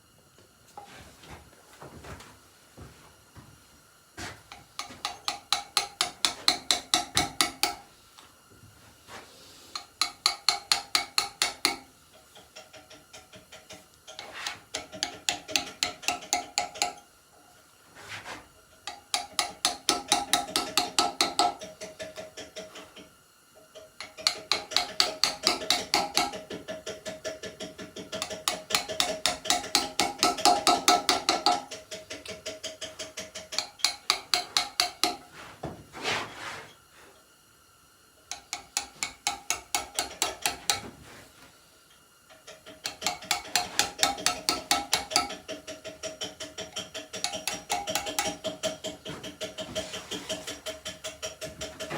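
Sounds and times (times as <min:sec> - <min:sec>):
hammer striking steel chisel: 0:04.5 - 0:07.8, 0:09.8 - 0:11.9, 0:18.9 - 0:21.8, 0:24.0 - 0:35.3, 0:38.3 - 0:40.9, 0:42.7 - 0:51.9.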